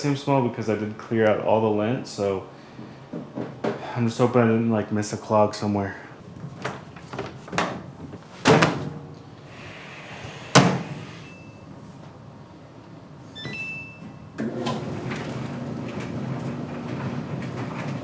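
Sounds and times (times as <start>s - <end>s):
dryer drum humming: 6.2s - 13.2s, 14.0s - 18.0s
dryer door shutting: 7.5s - 9.0s, 10.0s - 11.5s, 13.4s - 18.0s
knocks and thuds: 10.5s - 11.0s.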